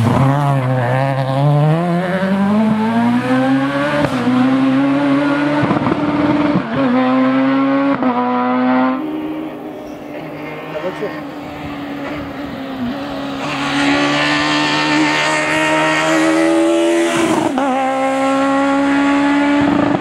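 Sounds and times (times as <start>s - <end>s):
rally car engine accelerating: 0.0s - 20.0s.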